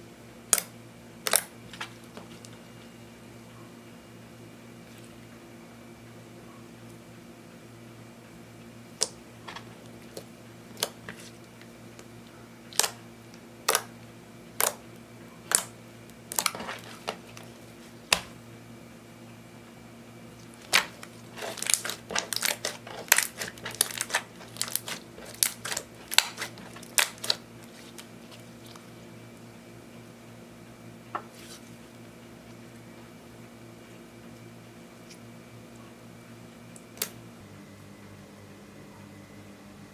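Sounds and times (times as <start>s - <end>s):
slime popping and clicking: 1.3s - 1.5s, 13.7s - 13.9s, 15.5s - 15.7s, 20.7s - 27.4s.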